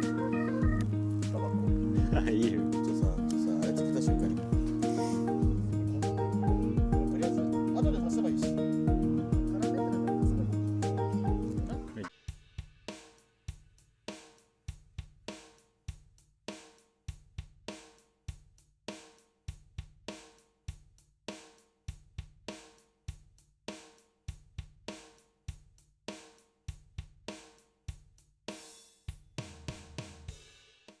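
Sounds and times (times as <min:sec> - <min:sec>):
bass line: 0:00.0 - 0:12.1
drum kit beat: 0:00.0 - 0:31.0.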